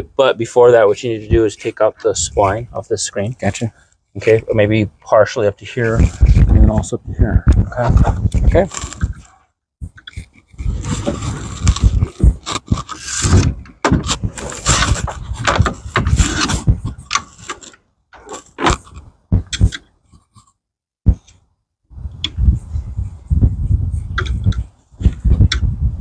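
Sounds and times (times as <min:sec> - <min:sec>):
rubber spline scraping in frame: 0:07.7 - 0:20.6.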